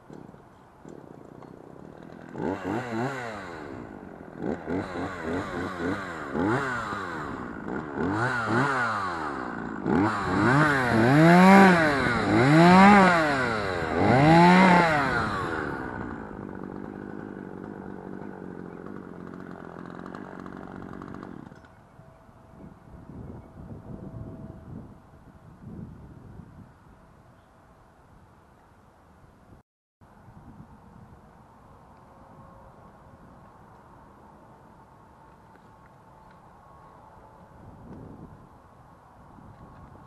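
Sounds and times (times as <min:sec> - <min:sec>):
chainsaw engine revving: 0:00.1 - 0:21.7.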